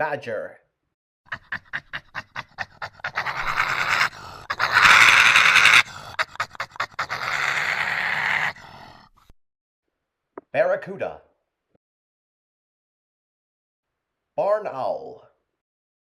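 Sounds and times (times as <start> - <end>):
badger huffing and hissing: 1.3 - 9.3.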